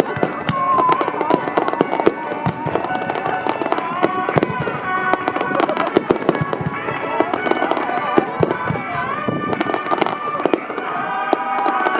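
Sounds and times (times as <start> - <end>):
fireworks bursting and crackling: 0.0 - 11.9
music over loudspeakers: 0.0 - 11.9.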